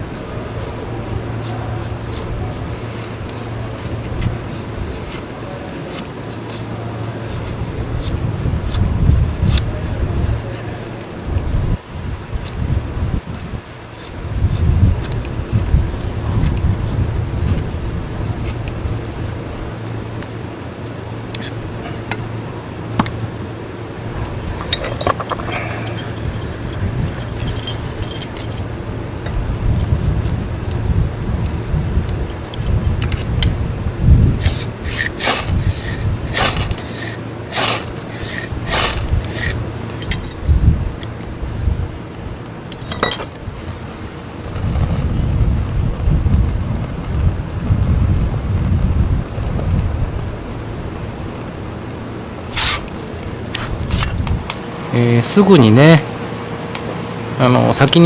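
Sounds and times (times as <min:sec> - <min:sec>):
steady low rumble: 0:00.0 - 0:58.0
sharp scrapes and clinks: 0:24.6 - 0:28.7, 0:34.3 - 0:41.1, 0:42.7 - 0:43.4, 0:52.4 - 0:54.2.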